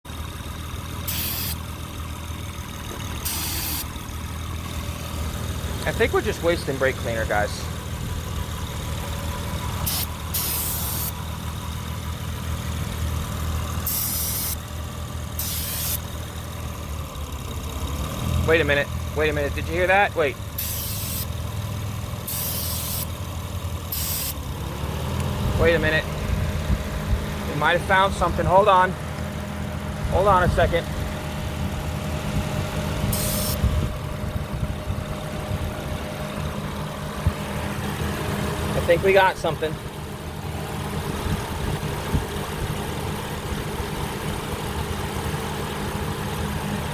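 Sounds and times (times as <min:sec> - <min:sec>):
car engine idling: 0:00.0 - 0:46.9
spray can hissing: 0:01.1 - 0:01.6, 0:03.2 - 0:03.9, 0:09.8 - 0:11.1, 0:13.8 - 0:14.6, 0:15.4 - 0:16.0, 0:20.6 - 0:21.3, 0:22.3 - 0:23.1, 0:23.9 - 0:24.4, 0:33.1 - 0:33.6.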